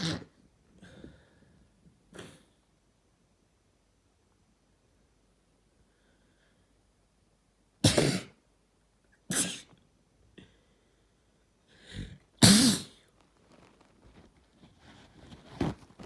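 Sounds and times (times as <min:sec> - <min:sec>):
person sneezing: 0:07.8 - 0:08.4, 0:09.3 - 0:09.7, 0:12.4 - 0:13.0.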